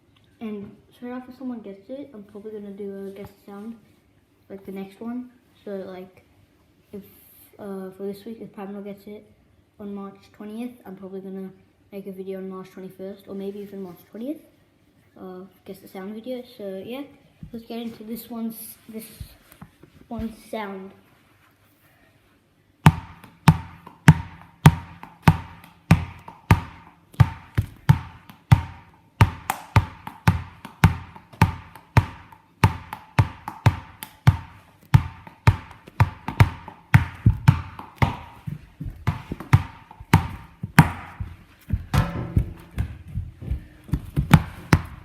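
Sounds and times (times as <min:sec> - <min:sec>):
sharp ringing knocks: 0:41.9 - 0:43.0.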